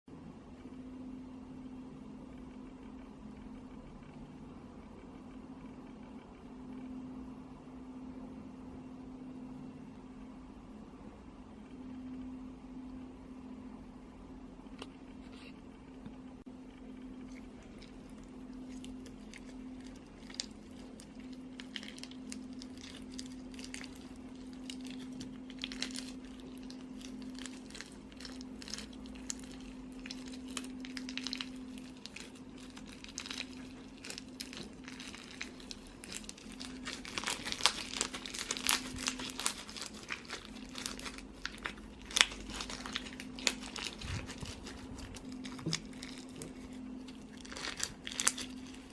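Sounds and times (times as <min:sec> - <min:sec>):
steady low hum: 0:00.1 - 0:48.9
slime crackling and popping: 0:17.2 - 0:48.9.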